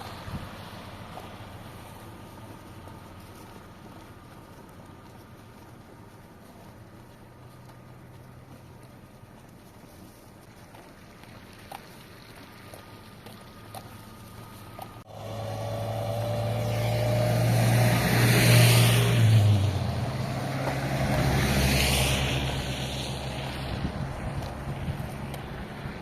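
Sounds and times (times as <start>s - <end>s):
engine humming: 0.0s - 26.0s
rushing wind noise: 16.6s - 26.0s.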